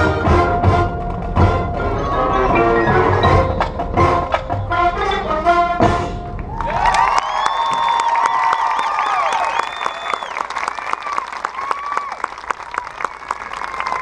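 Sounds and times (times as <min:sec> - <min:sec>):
marching band music: 0:00.0 - 0:06.7
crowd applauding: 0:06.4 - 0:14.0
crowd whistling: 0:06.5 - 0:12.3.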